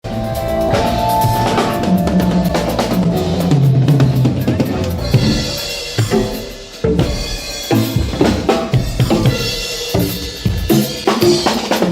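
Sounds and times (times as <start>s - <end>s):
bass drum hits: 0.4s - 6.4s
low ringing tones: 0.6s - 5.8s.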